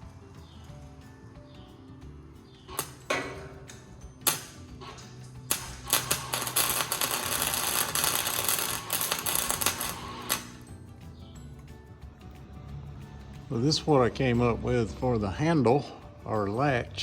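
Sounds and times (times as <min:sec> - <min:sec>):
arc welding crackle: 0:02.6 - 0:10.7.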